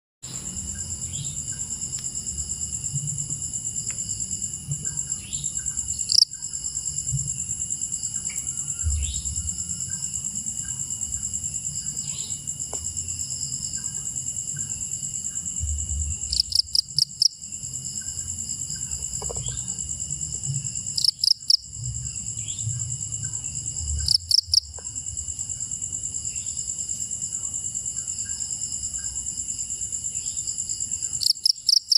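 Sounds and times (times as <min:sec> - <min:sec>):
crickets trilling: 0:00.2 - 0:31.9.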